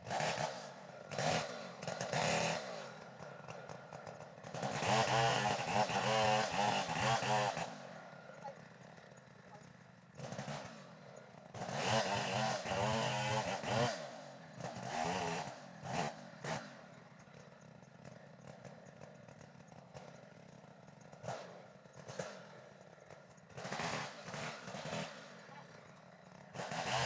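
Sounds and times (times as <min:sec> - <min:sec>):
chainsaw revving and idling: 0:00.0 - 0:27.0.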